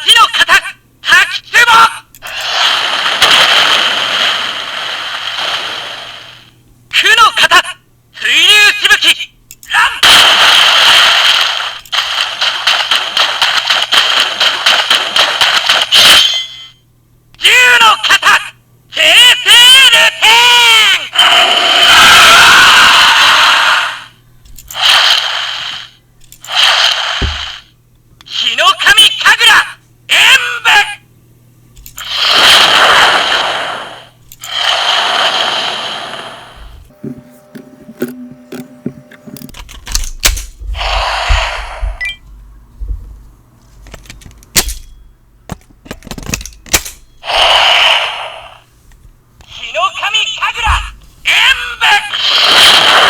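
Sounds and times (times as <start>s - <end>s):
toy speaker hissing rush: 2.2s - 6.6s, 10.1s - 16.0s, 22.8s - 27.7s, 32.0s - 36.9s, 40.8s - 42.0s, 47.2s - 48.7s, 50.6s - 53.0s.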